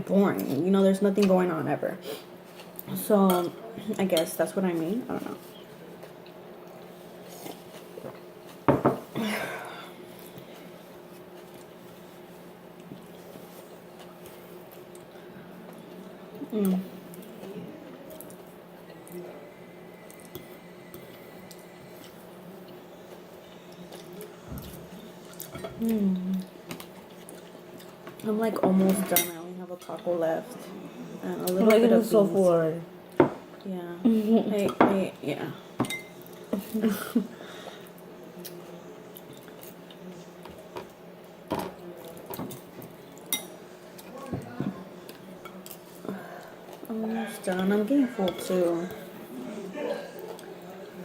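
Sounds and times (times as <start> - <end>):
faint steady hum: 0.0 - 51.0
soft wet chewing: 5.2 - 8.7, 10.0 - 19.3, 20.0 - 28.3, 37.8 - 41.0, 41.8 - 51.0
chewing food: 20.1 - 28.2.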